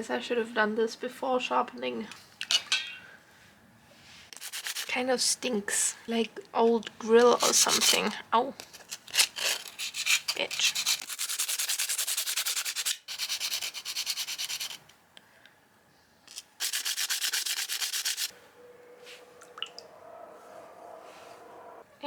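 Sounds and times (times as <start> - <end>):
sandpaper scratching on steel: 4.4 - 5.0, 7.4 - 8.1, 9.2 - 14.8, 16.3 - 18.3.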